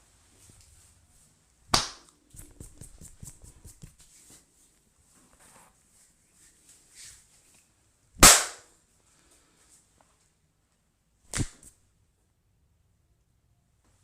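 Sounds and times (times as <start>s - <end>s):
sharp cracks: 1.7s - 2.2s, 8.2s - 8.7s, 11.3s - 11.7s.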